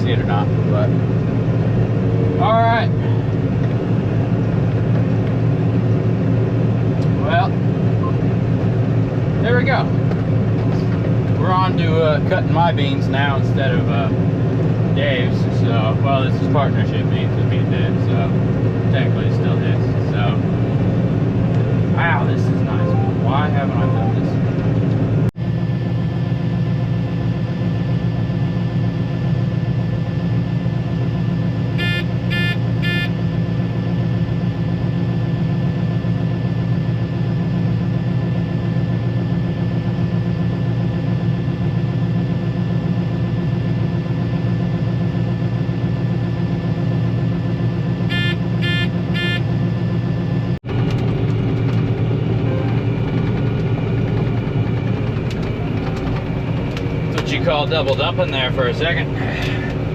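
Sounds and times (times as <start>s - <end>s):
combine harvester droning: 0.0s - 59.9s
short electronic beeps: 22.7s - 24.4s, 31.8s - 33.1s, 48.1s - 49.4s.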